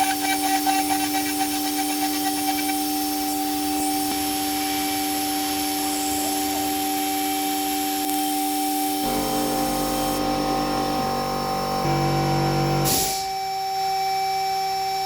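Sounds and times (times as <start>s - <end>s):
cnc router spindle whine: 0.0s - 15.0s.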